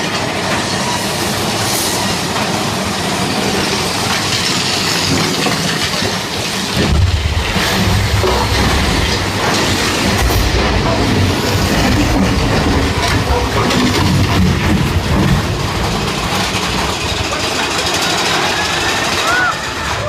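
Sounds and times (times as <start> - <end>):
roller coaster rattling on rails: 0.0 - 20.0
deep low rumble: 6.8 - 17.4.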